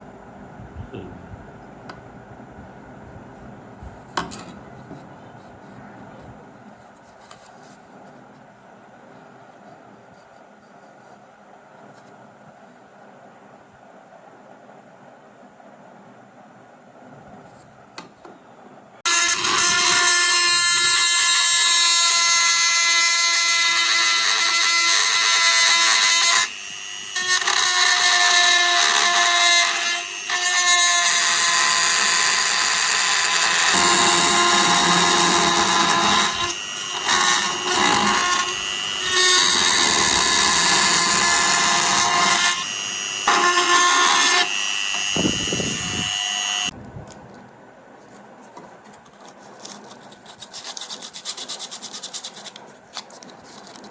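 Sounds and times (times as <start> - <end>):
power tool motor whine: 19.1 - 22.9, 30.0 - 46.7.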